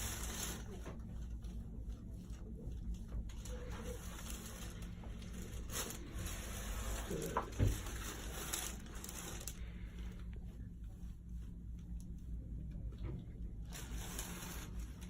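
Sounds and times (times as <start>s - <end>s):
clothing rustling: 2.0s - 12.2s.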